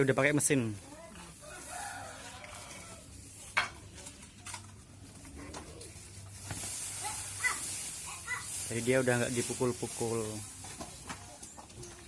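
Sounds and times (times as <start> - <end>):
rice thresher humming: 6.3 - 10.6.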